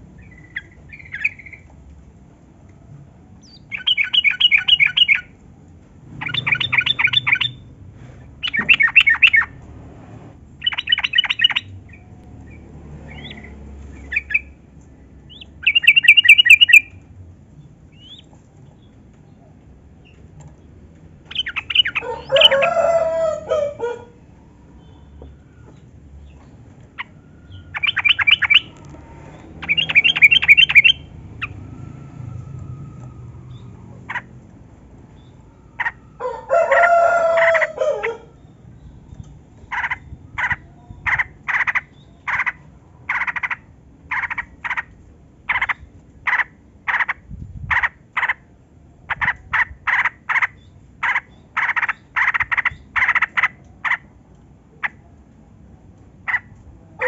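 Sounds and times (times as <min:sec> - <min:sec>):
bulbul chattering calls: 0:06.2 - 0:07.7, 0:10.6 - 0:12.0, 0:15.3 - 0:16.9, 0:27.0 - 0:28.7, 0:29.6 - 0:31.6
rooster crowing: 0:22.0 - 0:24.2, 0:35.8 - 0:38.4.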